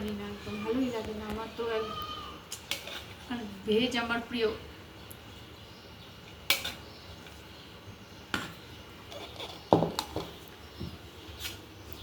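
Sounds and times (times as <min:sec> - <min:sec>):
cutlery and dishes clinking: 0:02.5 - 0:03.2.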